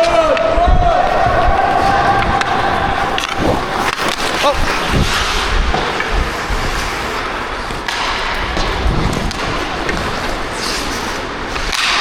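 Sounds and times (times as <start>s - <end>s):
skate blades scraping ice: 1.0s - 12.0s.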